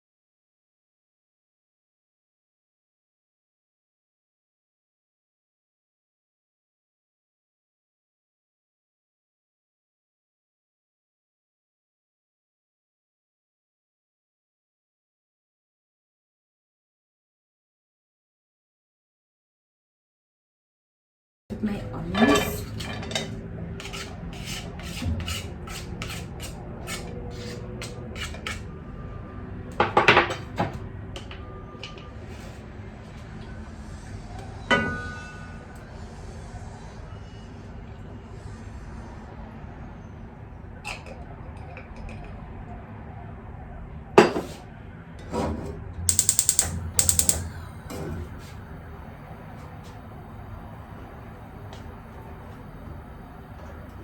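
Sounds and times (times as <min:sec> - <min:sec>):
spoon scraping a pan: 0:23.8 - 0:27.6
sharp knock: 0:46.1 - 0:47.5
utensil clattering against pan: 0:46.1 - 0:47.5
rapid ratcheting clicks: 0:46.1 - 0:47.6.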